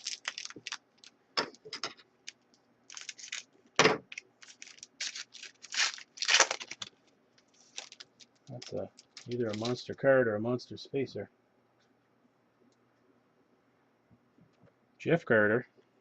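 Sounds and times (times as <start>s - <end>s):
card pack wrapper crinkling: 0.0s - 1.2s, 2.2s - 6.9s, 7.5s - 9.8s
cards being handled: 2.9s - 3.4s, 4.1s - 9.8s.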